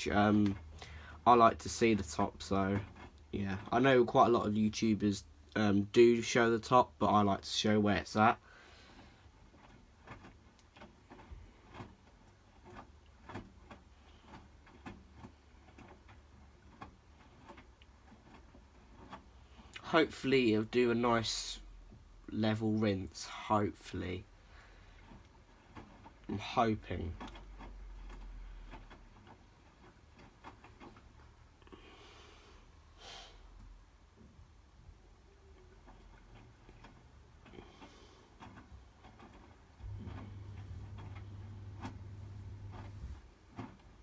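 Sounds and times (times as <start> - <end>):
washing machine low hum: 0.0 - 44.0
faint clicks and soft knocks: 33.6 - 44.0
washing machine drum turning: 39.6 - 44.0.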